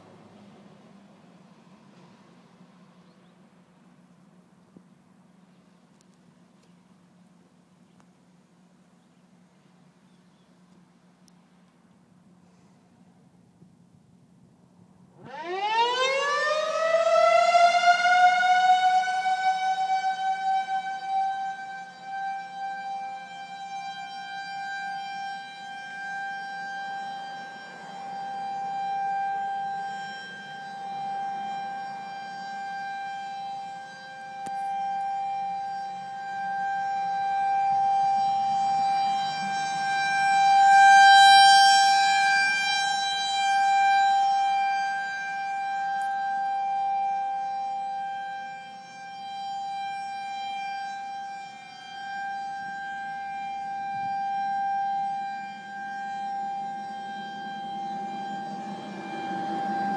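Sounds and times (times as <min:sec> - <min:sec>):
warning siren wailing: 0:15.0 - 0:59.9.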